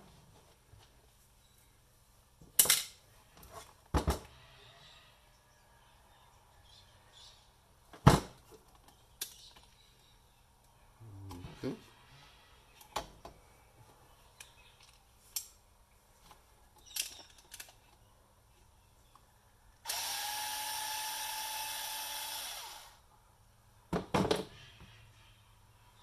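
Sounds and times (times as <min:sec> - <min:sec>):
power drill whining: 0:19.9 - 0:23.0.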